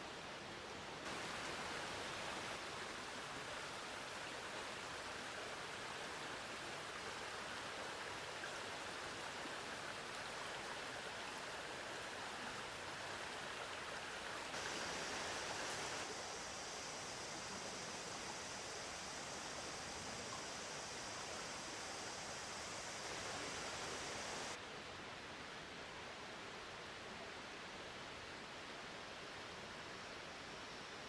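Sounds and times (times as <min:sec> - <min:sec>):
mountain stream flowing: 0:00.0 - 0:31.0
rain falling: 0:01.0 - 0:02.6, 0:14.5 - 0:24.6.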